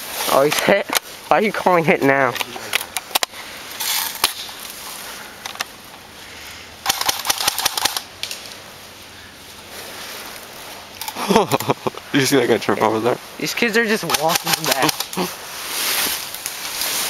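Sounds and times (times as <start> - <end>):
airsoft gun firing: 6.9 - 8.1, 14.1 - 15.1.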